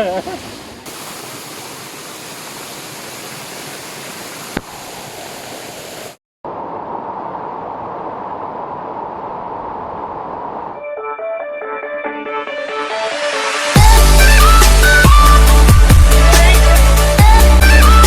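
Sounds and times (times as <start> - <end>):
waterfall rushing: 0.0 - 6.2.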